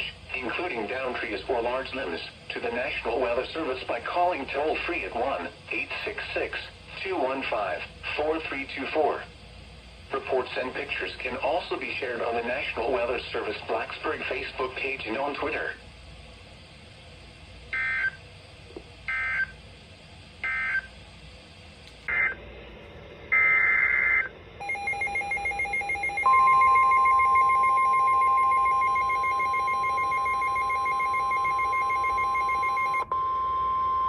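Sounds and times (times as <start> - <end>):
long steady alarm tone: 23.3 - 34.0
rapidly pulsing electronic beep: 23.3 - 34.0.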